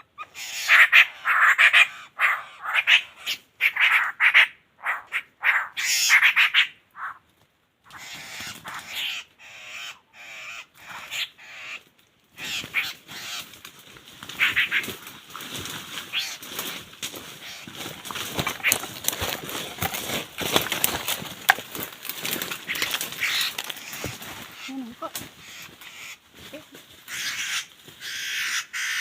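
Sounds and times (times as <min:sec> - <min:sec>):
bird calling: 0:16.0 - 0:29.0.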